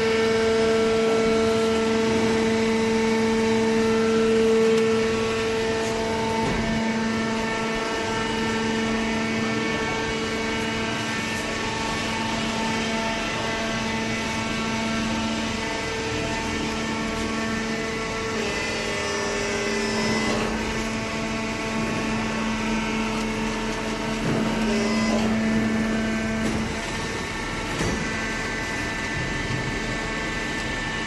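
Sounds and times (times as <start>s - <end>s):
hydraulic baler motor humming: 0.0s - 31.0s.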